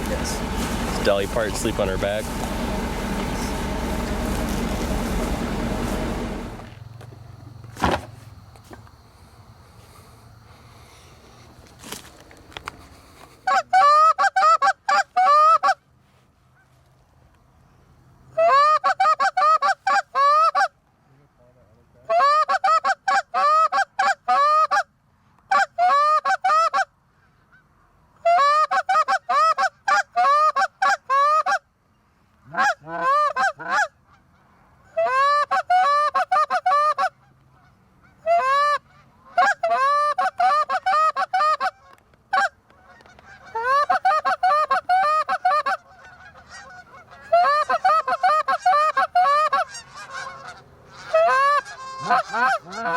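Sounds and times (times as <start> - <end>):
goose honking: 0.0 - 6.7, 32.5 - 34.3, 34.9 - 52.9.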